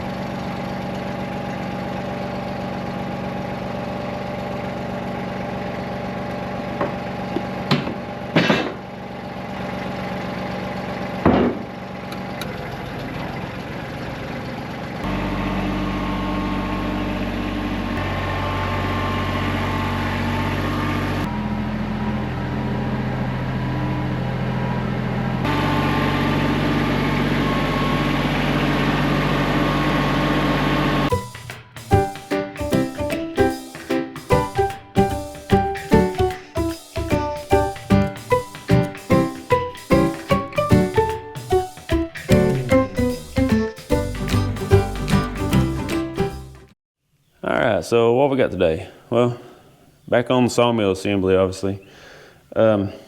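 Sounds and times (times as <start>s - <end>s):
engine running: 0.0s - 46.7s
loud steady sound shifting pitch: 25.4s - 33.1s.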